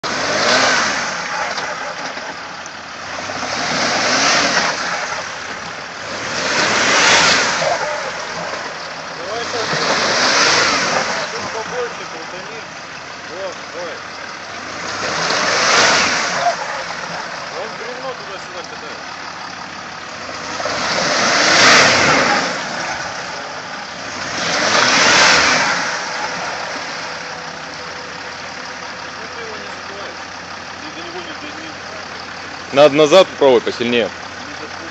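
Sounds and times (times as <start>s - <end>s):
car engine revving hard: 0.0s - 34.9s
wheels churning mud: 0.0s - 34.9s.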